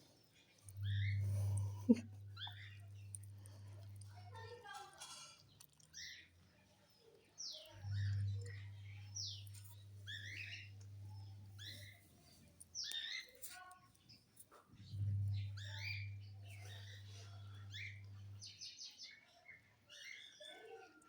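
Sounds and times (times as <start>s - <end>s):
steady low hum: 0.0s - 4.4s, 7.8s - 13.2s, 14.7s - 18.5s
birds chirping: 0.0s - 21.0s.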